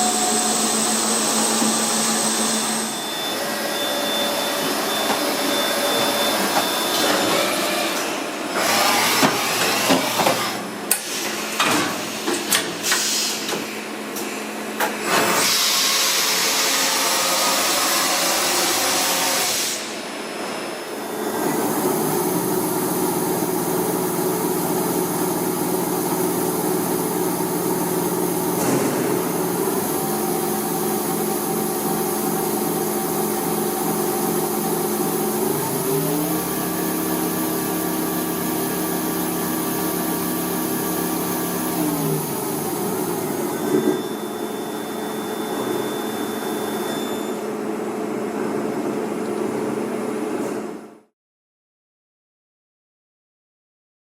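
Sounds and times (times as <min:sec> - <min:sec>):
machine whine: 0:00.0 - 0:10.8, 0:15.0 - 0:48.0
machine hiss: 0:11.0 - 0:13.5.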